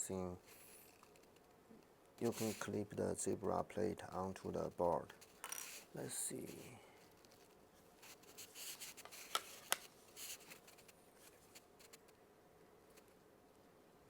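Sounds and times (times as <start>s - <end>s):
faint rubbing and scraping: 2.2s - 3.4s.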